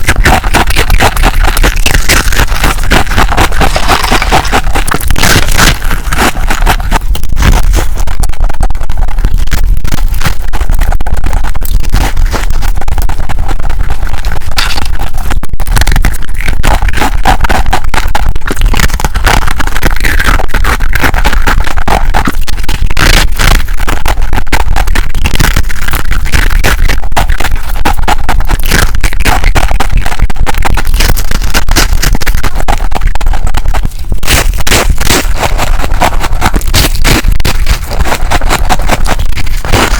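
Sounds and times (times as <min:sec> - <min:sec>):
crunching frost being eaten: 0:00.0 - 0:07.9, 0:18.4 - 0:23.6, 0:33.7 - 0:39.9.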